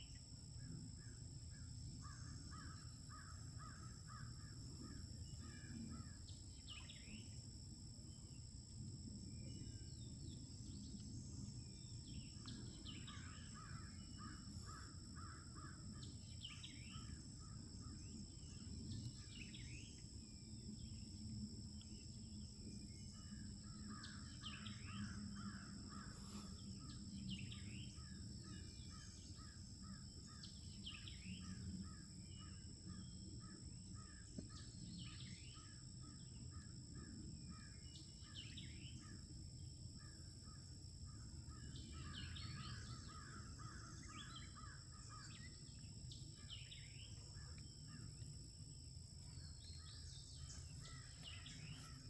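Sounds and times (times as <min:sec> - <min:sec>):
bird chirps: 0:24.5 - 0:26.7.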